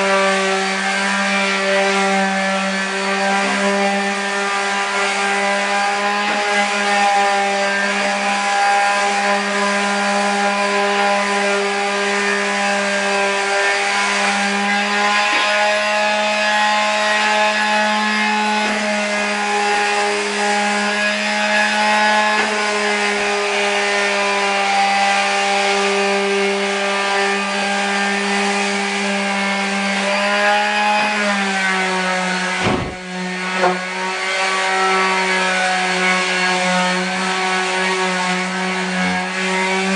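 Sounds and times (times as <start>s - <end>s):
power sander on drywall compound: 0.0s - 39.9s
knock: 32.6s - 33.0s.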